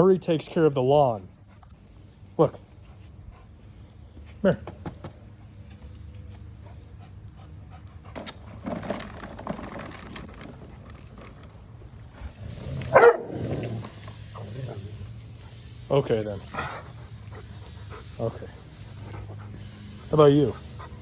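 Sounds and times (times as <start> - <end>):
dog panting and sniffing: 0.5 - 21.0
dog barking loudly: 12.9 - 13.5.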